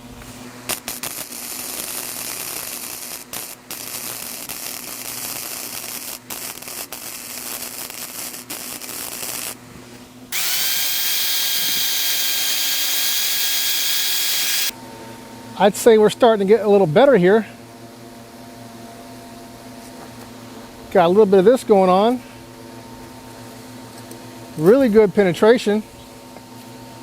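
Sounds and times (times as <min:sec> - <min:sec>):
welding arc crackling: 0:00.7 - 0:09.6, 0:10.3 - 0:14.7
high machine whine: 0:10.3 - 0:14.7.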